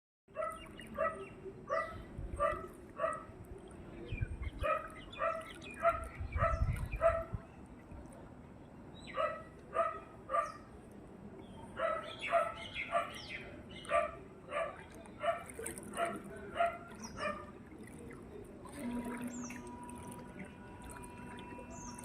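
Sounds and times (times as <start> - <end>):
dog barking: 0.4 - 3.2, 4.6 - 7.3, 9.2 - 10.6, 11.8 - 13.2, 13.9 - 17.5.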